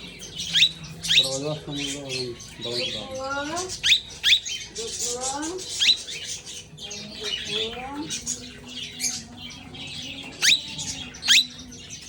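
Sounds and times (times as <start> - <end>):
parakeet chattering: 0.0 - 12.0
parakeet shrill squawks: 3.6 - 6.4.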